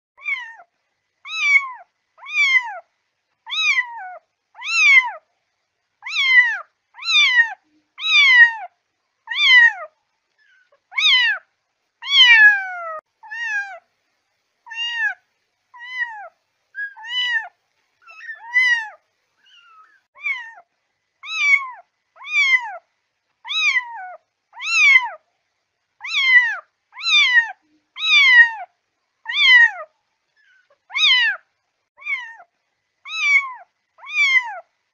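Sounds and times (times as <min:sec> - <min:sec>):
kitten meowing: 0:00.2 - 0:00.6, 0:01.3 - 0:02.8, 0:03.5 - 0:05.2, 0:06.0 - 0:08.7, 0:09.3 - 0:09.9, 0:10.5 - 0:11.4, 0:12.0 - 0:13.8, 0:14.7 - 0:15.2, 0:15.8 - 0:20.6, 0:21.2 - 0:22.8, 0:23.4 - 0:25.2, 0:26.0 - 0:28.7, 0:29.3 - 0:31.4, 0:32.0 - 0:32.5, 0:33.1 - 0:34.6.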